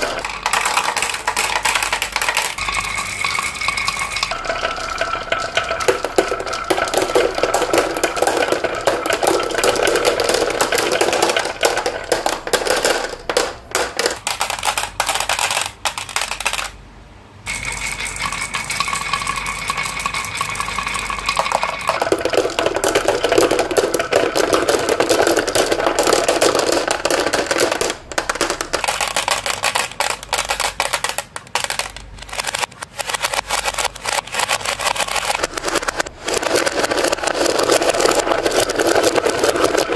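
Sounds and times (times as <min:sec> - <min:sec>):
marbles rattling down track: 0:00.0 - 0:16.8, 0:17.5 - 0:39.9.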